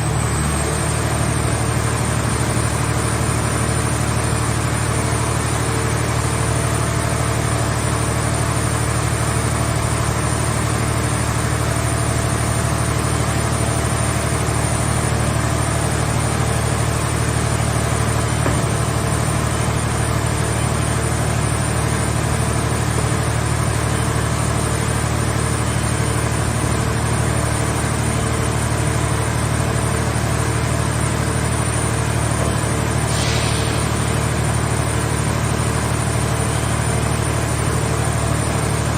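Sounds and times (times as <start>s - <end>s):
hydraulic press hum: 15.6s - 28.2s, 33.0s - 36.3s
brief hiss: 33.1s - 34.1s.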